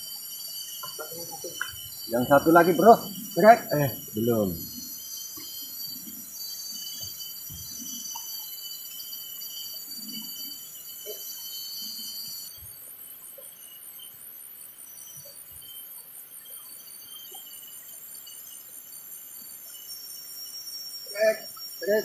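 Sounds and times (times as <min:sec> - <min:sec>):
high-pitched insect chorus: 0:00.0 - 0:22.0.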